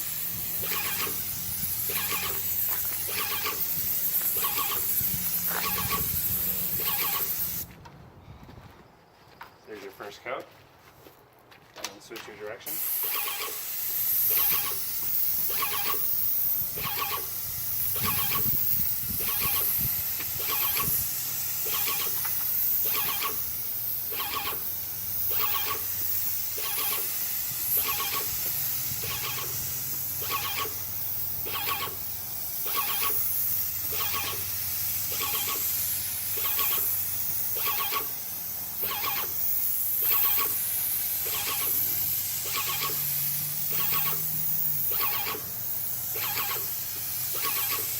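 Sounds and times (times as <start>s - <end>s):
paint sprayer hissing: 0.0s - 7.7s, 12.6s - 47.9s
pump squeaky pulsing: 0.6s - 7.7s, 13.0s - 13.7s, 14.3s - 21.0s, 21.6s - 24.7s, 25.3s - 35.7s, 36.3s - 38.2s, 38.8s - 39.4s, 40.0s - 40.6s, 41.2s - 47.9s.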